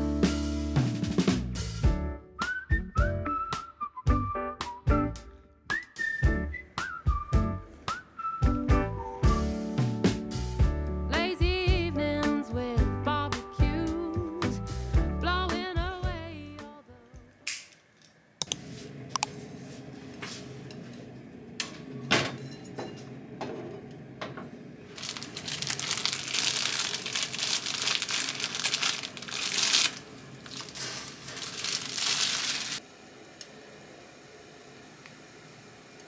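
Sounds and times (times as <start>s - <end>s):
wrapping crinkling and tearing: 24.9s - 32.8s.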